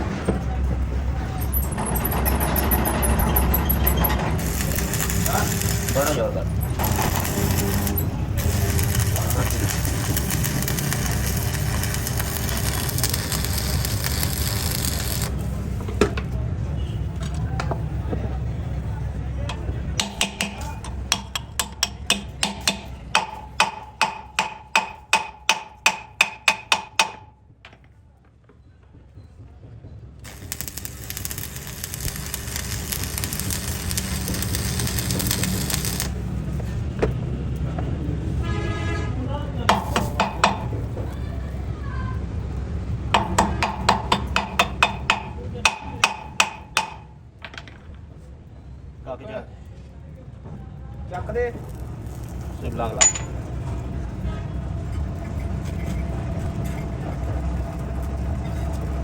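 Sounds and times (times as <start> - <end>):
hammer striking metal: 20.0 - 27.4, 39.7 - 40.9, 43.1 - 47.1.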